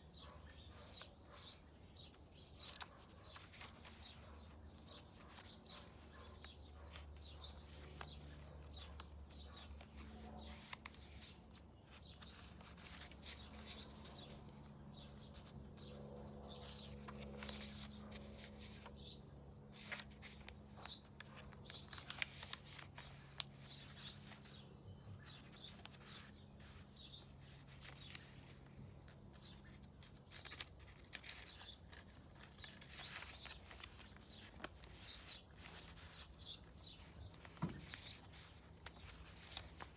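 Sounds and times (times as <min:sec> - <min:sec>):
birds chirping: 0:00.1 - 0:19.2.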